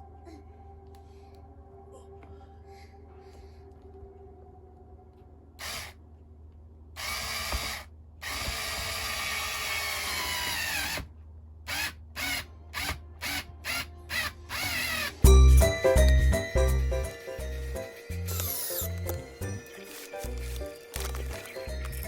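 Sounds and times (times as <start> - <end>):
electric drill running: 5.6 - 6.0, 7.0 - 11.0, 11.7 - 15.2, 17.1 - 22.0.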